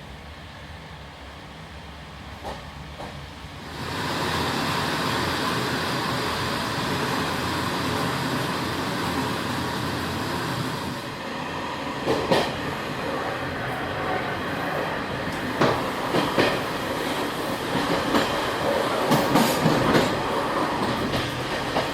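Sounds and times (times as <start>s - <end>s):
train wheels rumbling on rail: 0.0s - 21.9s
wheels clacking over rail joints: 12.0s - 21.9s.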